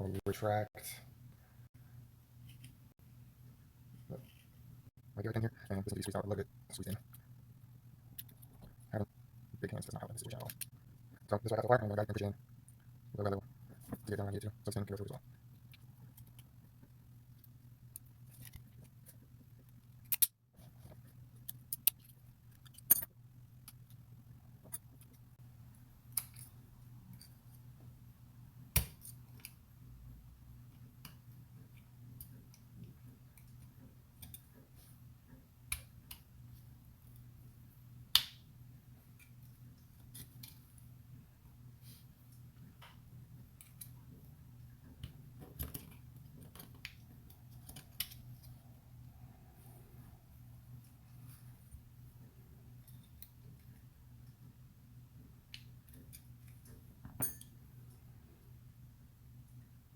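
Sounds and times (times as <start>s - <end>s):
steady low hum: 0.0s - 59.9s
small metal parts clicking: 20.0s - 20.4s, 21.4s - 23.1s.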